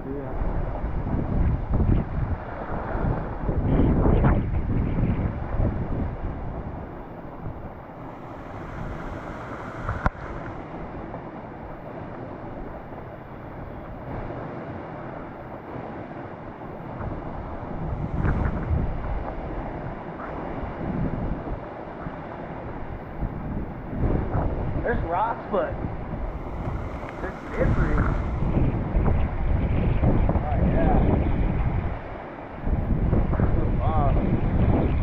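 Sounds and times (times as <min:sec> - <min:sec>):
wind buffeting microphone: 0:00.0 - 0:35.0
creek water rushing: 0:06.9 - 0:15.6, 0:25.0 - 0:30.4.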